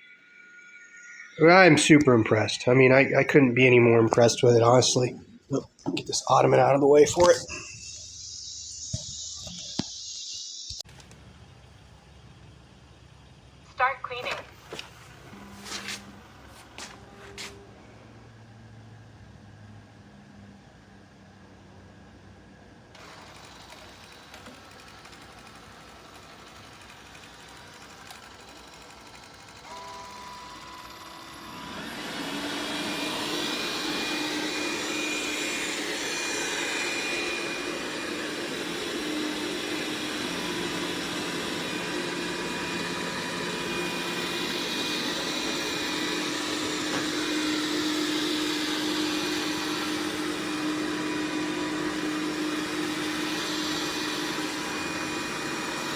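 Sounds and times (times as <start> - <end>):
vacuum suction fan whining: 0.0 - 55.9
stepped electronic tones: 5.4 - 10.8.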